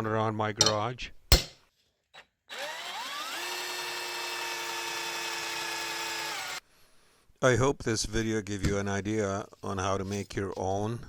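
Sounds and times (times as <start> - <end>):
angle grinder whine: 2.5 - 6.6.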